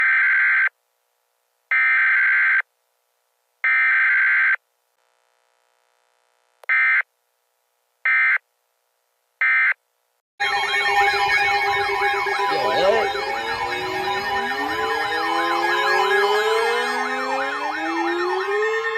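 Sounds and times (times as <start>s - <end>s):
warbling alert siren: 10.9s - 18.9s.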